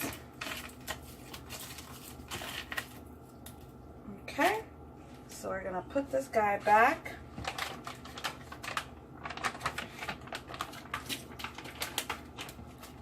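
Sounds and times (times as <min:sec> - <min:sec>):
plastic packaging crinkling: 0:00.0 - 0:03.8, 0:07.3 - 0:13.0.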